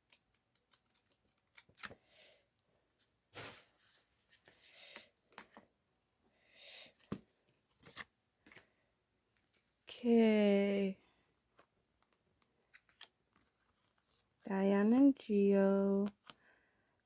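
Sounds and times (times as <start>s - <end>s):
paper rustling: 0.5s - 2.0s, 3.0s - 5.7s, 7.1s - 8.6s, 12.6s - 15.1s.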